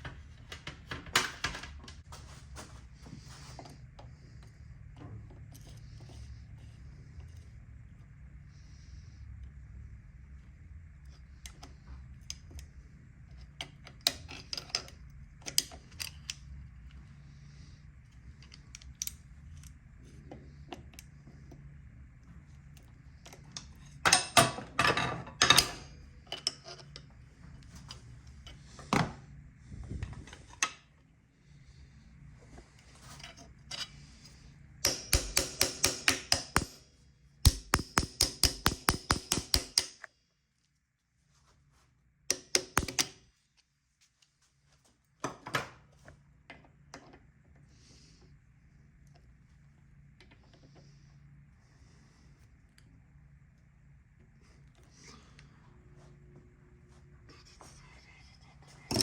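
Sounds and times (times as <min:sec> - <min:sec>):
low steady hum: 0:00.0 - 0:45.2
metal parts clicking and knocking: 0:34.8 - 0:36.8, 0:37.5 - 0:40.1, 0:42.3 - 0:43.2.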